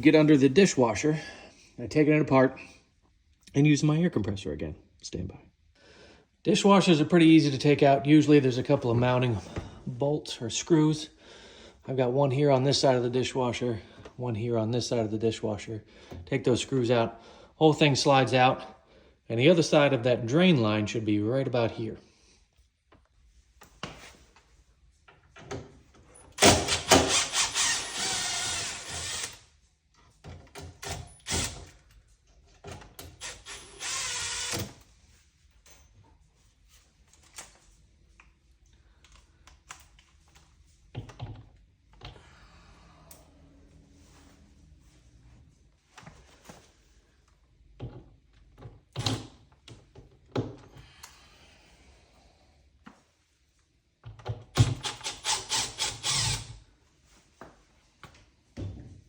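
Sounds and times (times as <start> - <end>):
power drill-driver running: 26.4 - 29.4, 33.2 - 34.7, 54.7 - 56.6.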